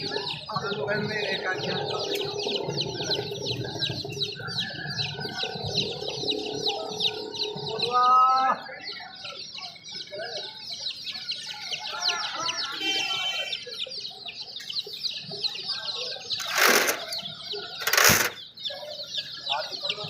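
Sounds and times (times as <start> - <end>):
chicks cheeping: 0.0 - 20.0
loud rustling: 16.4 - 17.2, 17.8 - 18.4.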